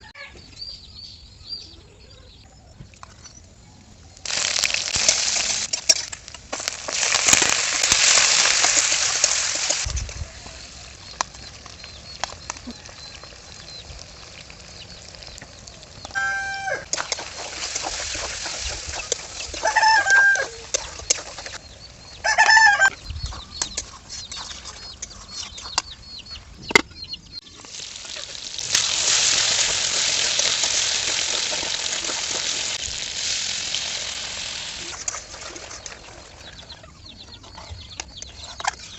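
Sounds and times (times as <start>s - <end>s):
chickens clucking: 9.7s - 28.4s, 34.2s - 38.9s.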